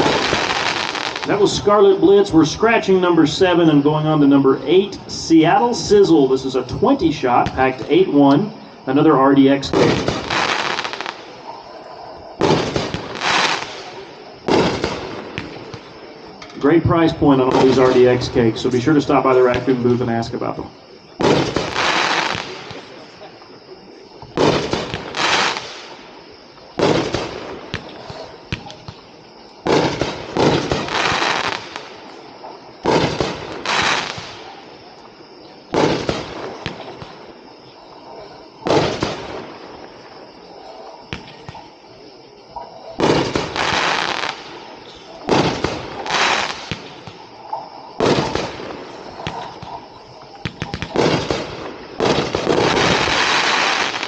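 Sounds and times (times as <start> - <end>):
fireworks bangs with hissing tails: 0.0 - 3.7, 4.7 - 54.0.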